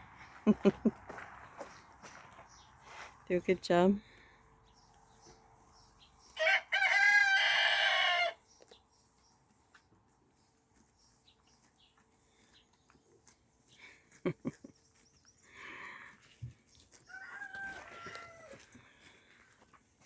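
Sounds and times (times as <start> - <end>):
rooster crowing: 6.4 - 8.4, 17.1 - 18.7.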